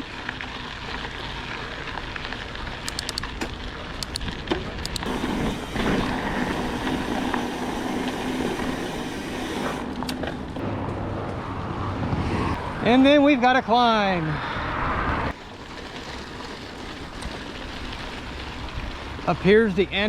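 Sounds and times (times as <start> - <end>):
bike clicks and rattles: 0.0 - 9.0, 9.6 - 10.6, 15.3 - 19.6
bike tyre and wind noise: 0.0 - 20.0.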